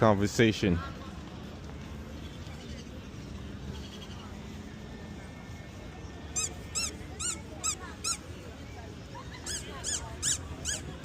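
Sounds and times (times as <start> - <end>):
high-pitched chirps: 6.4 - 8.2.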